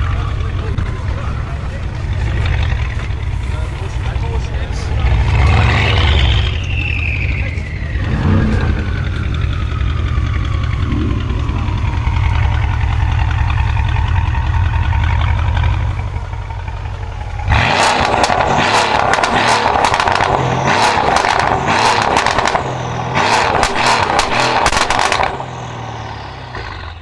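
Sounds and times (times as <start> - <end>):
engine exhaust rumble: 0.0 - 27.0
exhaust crackles and pops: 0.0 - 27.0.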